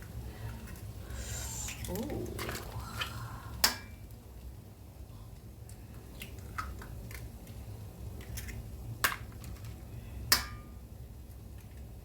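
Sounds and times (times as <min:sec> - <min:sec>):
steady low hum: 0:00.0 - 0:04.5
light clicks and taps at pan: 0:05.4 - 0:11.9.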